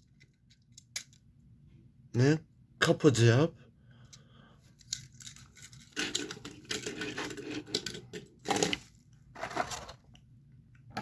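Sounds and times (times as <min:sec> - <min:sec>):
toy trains clicking and rattling: 0:04.8 - 0:08.8.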